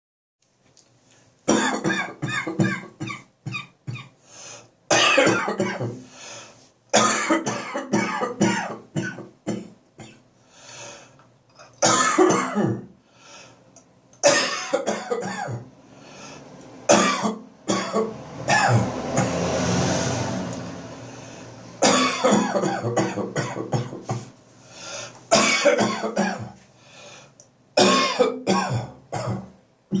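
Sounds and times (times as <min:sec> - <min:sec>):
man coughing: 0:01.5 - 0:04.1, 0:04.9 - 0:06.0, 0:07.0 - 0:10.2, 0:11.6 - 0:12.9, 0:14.2 - 0:15.7, 0:16.9 - 0:19.0, 0:21.8 - 0:24.3, 0:25.3 - 0:26.6, 0:27.8 - 0:30.0.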